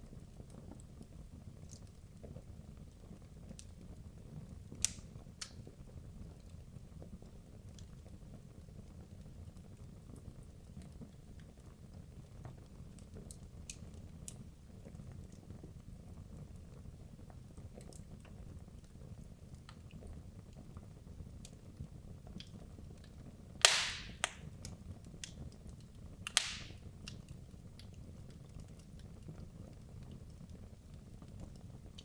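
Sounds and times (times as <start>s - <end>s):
fire crackling: 0.1s - 32.0s
fire rumbling: 0.2s - 32.0s
burning wood popping loudly: 23.6s - 25.3s, 26.3s - 27.2s.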